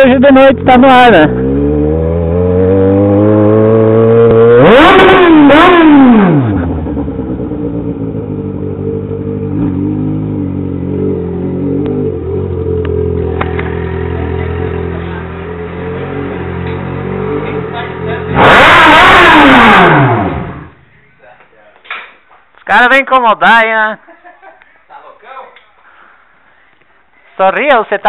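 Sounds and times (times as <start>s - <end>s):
motorcycle engine revving: 0.0s - 20.9s.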